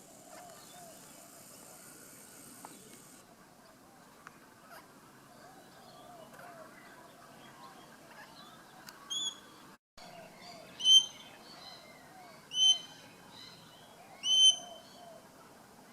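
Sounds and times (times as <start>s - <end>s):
faint bird calls: 4.6s - 15.4s
parrot whistled calls: 10.8s - 11.2s, 12.5s - 12.9s, 14.2s - 14.8s.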